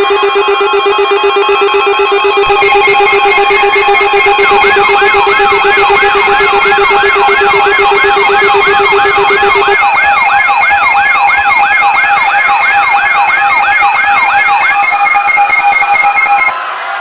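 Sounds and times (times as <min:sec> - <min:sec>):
electronic siren yelping: 0:00.0 - 0:16.5
rapid beeping alarm tones: 0:00.0 - 0:16.5.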